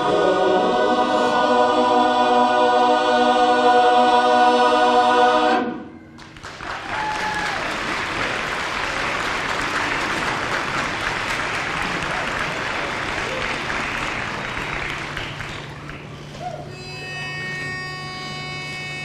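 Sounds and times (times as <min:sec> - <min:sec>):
a cappella chorus chord: 0:00.0 - 0:06.1
audience applause: 0:06.2 - 0:16.3
person cheering: 0:06.7 - 0:07.8.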